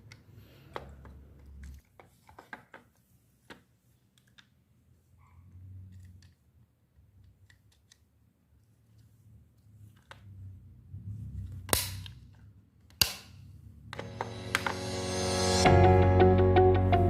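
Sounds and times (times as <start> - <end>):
plastic parts clicking and tapping: 0.0 - 4.6, 5.9 - 9.1
low hum: 14.0 - 17.0.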